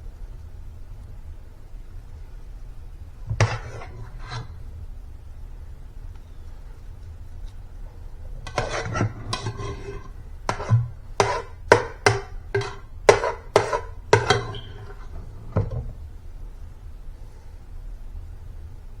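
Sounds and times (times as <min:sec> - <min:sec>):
utensil knocking on bowl rim: 0:08.5 - 0:15.0.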